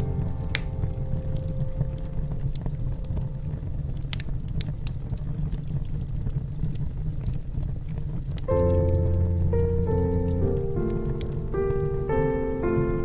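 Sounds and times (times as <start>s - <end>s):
low rumble: 0.0s - 5.8s, 8.5s - 13.0s
wood fire crackling: 0.0s - 13.0s.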